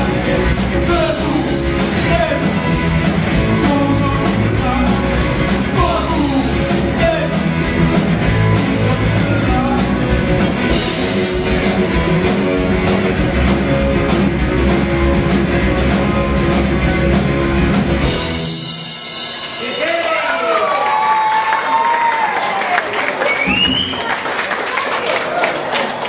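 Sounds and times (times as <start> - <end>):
distorted electric guitar: 0.0 - 20.1
drums and cymbals: 0.0 - 20.5
live rock band playing: 0.0 - 21.5.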